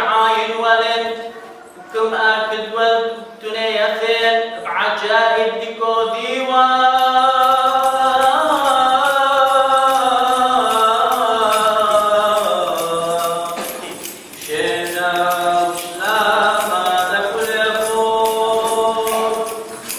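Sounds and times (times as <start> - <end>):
liturgical chanting: 0.0 - 19.9
small bells jingling: 6.6 - 19.9.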